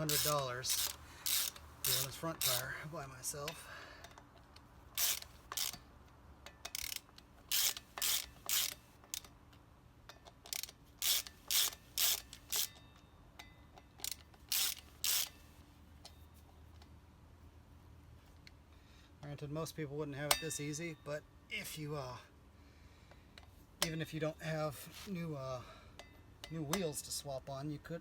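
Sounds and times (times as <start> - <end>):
socket ratchet clicking: 0.0 - 2.7, 4.9 - 5.9, 6.5 - 9.4, 10.1 - 13.0, 13.8 - 15.4.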